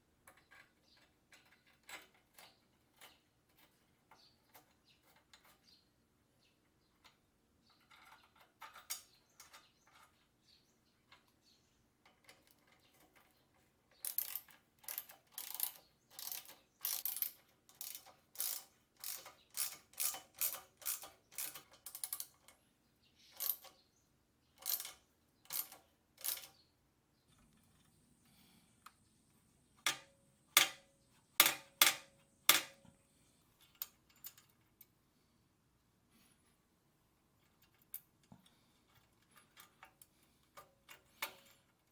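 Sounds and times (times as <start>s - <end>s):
metal tool clicking and rasping: 14.0s - 22.6s, 24.6s - 26.6s.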